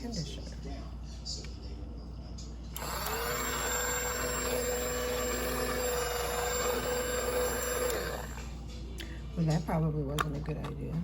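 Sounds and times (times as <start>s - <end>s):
small motor whining: 2.8s - 8.6s.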